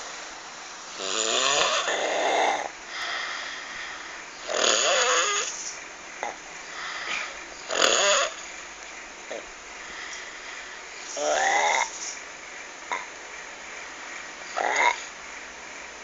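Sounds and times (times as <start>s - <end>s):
loud rattling snoring: 0.9s - 3.4s, 4.4s - 8.5s, 11.1s - 12.2s, 12.9s - 13.1s, 14.5s - 15.1s.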